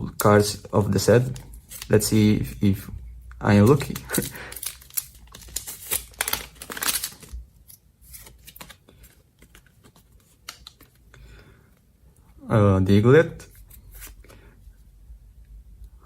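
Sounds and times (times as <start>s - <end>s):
cards rustling and clicking: 0.3s - 2.8s, 3.5s - 11.2s
foil pack tearing and crinkling: 3.7s - 7.4s.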